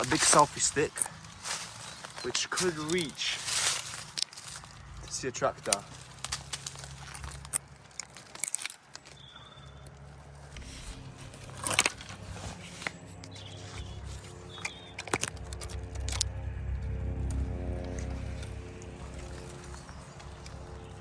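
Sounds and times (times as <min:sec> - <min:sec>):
twigs crackling and snapping: 0:00.0 - 0:21.0
bird chirps: 0:09.1 - 0:10.0, 0:12.2 - 0:16.6.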